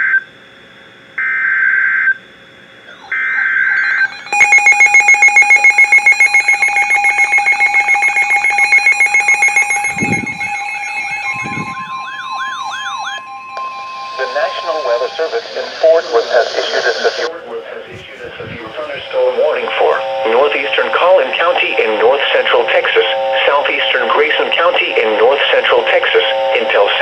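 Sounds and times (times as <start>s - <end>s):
pulsing high-pitched alert tone: 2.9s - 16.0s
steady single tone: 2.9s - 16.2s
buzzing data bursts: 2.9s - 17.3s
warbling siren-like tones: 2.9s - 17.3s.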